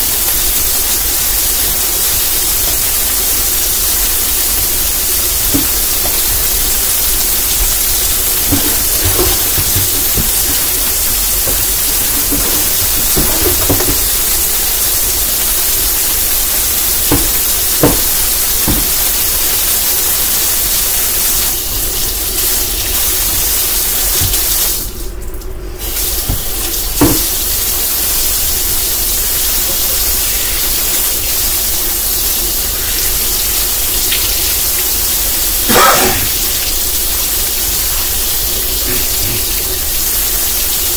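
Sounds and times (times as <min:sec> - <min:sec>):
tap running into sink: 0:05.4 - 0:14.7, 0:16.8 - 0:19.3, 0:24.0 - 0:24.8, 0:25.8 - 0:27.5.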